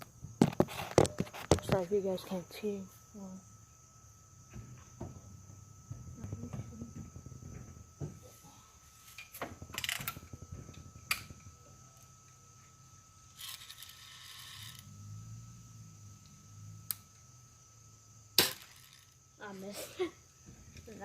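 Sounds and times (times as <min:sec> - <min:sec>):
bb gun mechanical clicks and rattles: 0:09.7 - 0:10.4, 0:13.4 - 0:14.9, 0:18.4 - 0:19.2.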